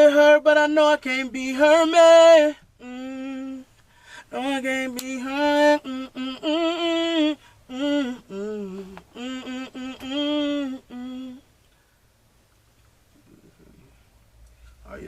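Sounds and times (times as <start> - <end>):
man humming a melody: 1.4 - 3.7, 4.4 - 11.4, 13.2 - 14.0.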